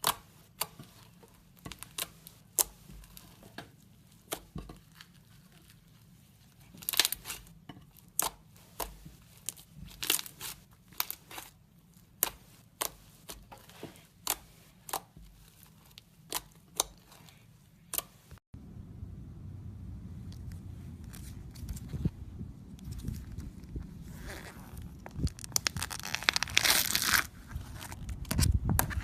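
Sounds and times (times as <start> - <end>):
crunchy slime crackling pops: 24.8 - 28.9.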